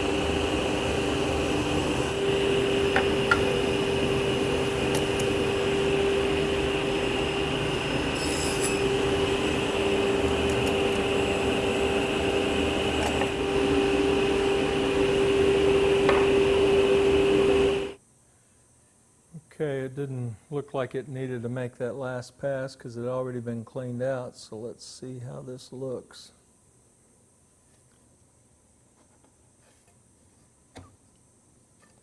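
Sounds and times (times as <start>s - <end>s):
table saw cutting wood: 0.0s - 18.0s.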